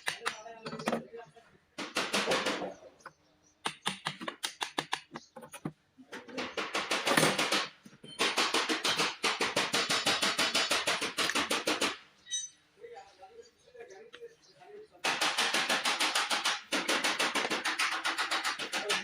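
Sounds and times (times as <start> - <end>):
rapid sharp clicks: 3.6 - 5.2, 15.0 - 19.0.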